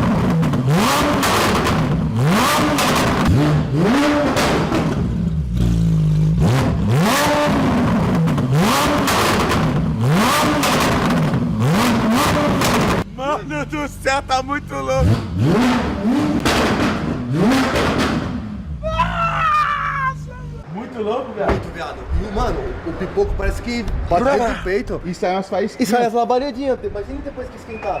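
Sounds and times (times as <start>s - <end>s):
exhaust pops: 0.0s - 13.1s, 15.1s - 18.6s
car engine revving: 0.0s - 18.9s.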